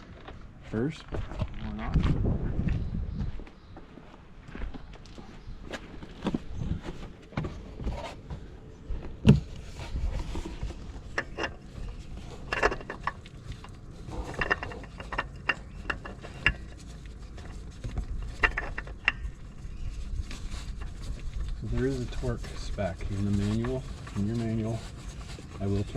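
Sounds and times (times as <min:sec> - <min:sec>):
tools and parts clicking and knocking: 0:11.1 - 0:16.8, 0:17.9 - 0:19.3.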